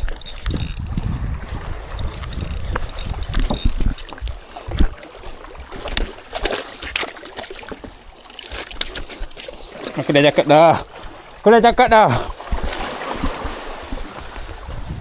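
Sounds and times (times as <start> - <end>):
wind rumbling on microphone: 0.0 - 6.2, 11.0 - 15.0.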